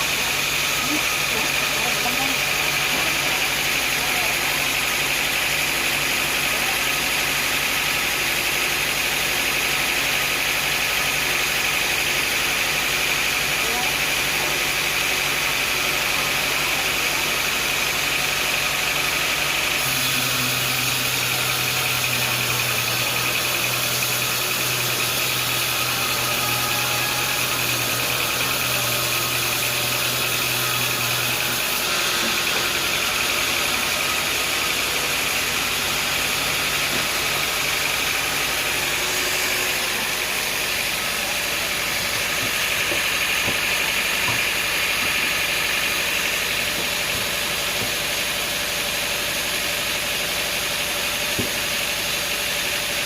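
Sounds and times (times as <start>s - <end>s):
sawmill machinery running: 0.0s - 53.0s.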